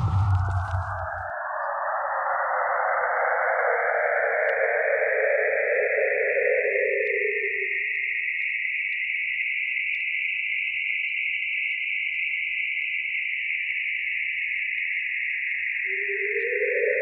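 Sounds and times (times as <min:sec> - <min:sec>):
low deep tone: 0:00.0 - 0:01.2.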